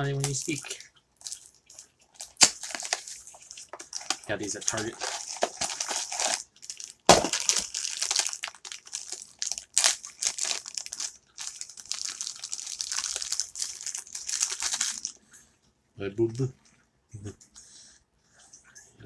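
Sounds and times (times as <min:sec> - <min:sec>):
sharp crack: 0:02.2 - 0:03.1, 0:03.8 - 0:11.1
packaging torn and crumpled: 0:02.2 - 0:15.2.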